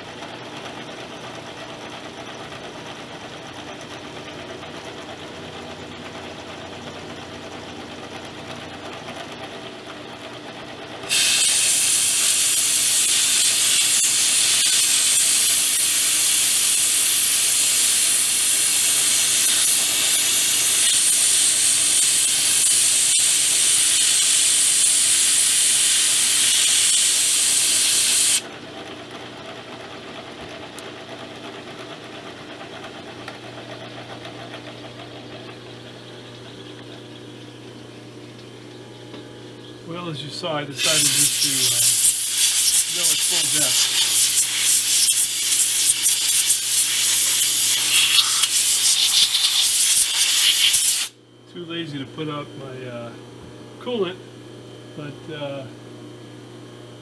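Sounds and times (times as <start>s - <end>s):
milling machine hissing: 11.0s - 28.4s, 39.9s - 51.2s.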